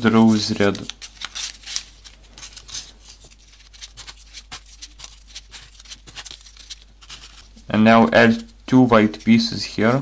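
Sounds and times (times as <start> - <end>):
paper clicks and rustles: 0.2 - 7.6.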